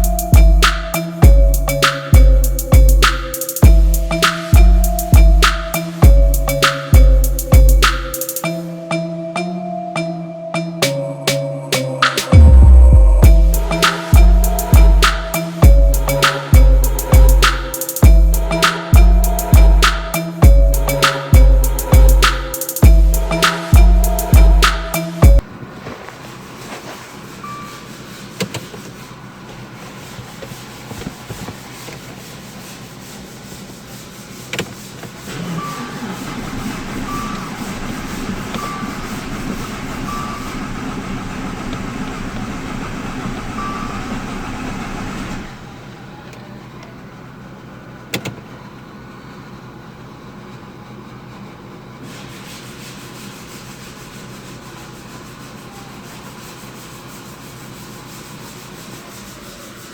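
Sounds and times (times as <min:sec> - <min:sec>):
short chime beeping: 0:00.0 - 0:25.4
car engine running: 0:35.3 - 0:45.6.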